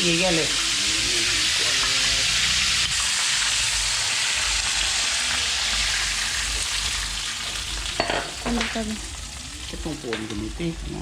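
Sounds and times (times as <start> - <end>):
chicken sizzling in oil: 0.0 - 11.0.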